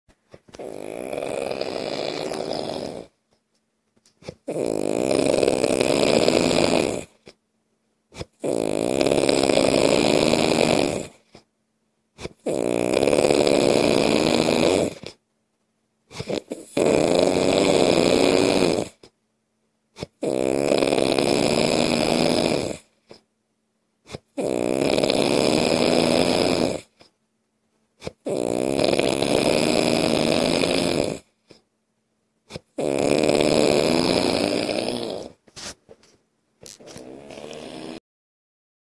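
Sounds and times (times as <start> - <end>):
loud snoring: 0.5 - 3.2, 4.2 - 7.4, 8.1 - 11.4, 12.2 - 15.2, 16.1 - 19.1, 20.0 - 23.2, 24.1 - 27.1, 28.0 - 31.6, 32.5 - 35.5, 36.6 - 38.0.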